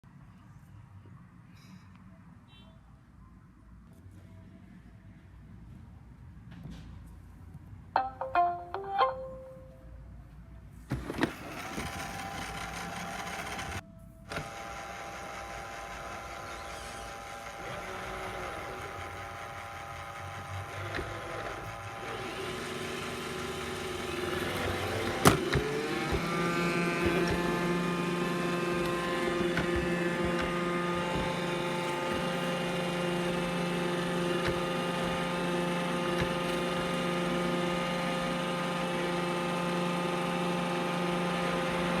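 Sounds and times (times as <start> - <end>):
robot vacuum humming: 11.0 - 42.0.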